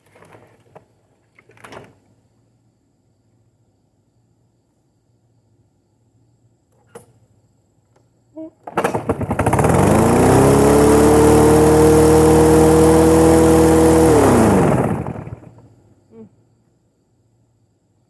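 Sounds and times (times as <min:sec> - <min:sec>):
lawn mower engine running: 0:08.6 - 0:15.7.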